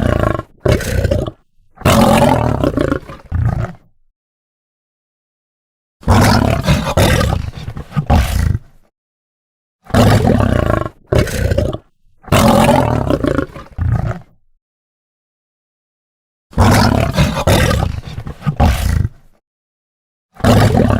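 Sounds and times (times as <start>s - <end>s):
lion roaring: 0.0s - 3.9s, 6.0s - 8.9s, 9.8s - 14.4s, 16.5s - 19.4s, 20.4s - 20.9s.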